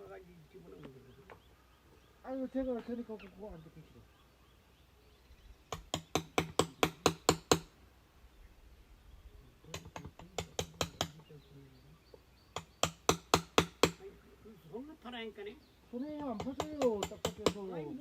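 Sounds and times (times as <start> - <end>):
hand tool hacking hard wood: 5.7 - 7.7, 9.7 - 11.2, 12.5 - 14.0, 16.2 - 17.7.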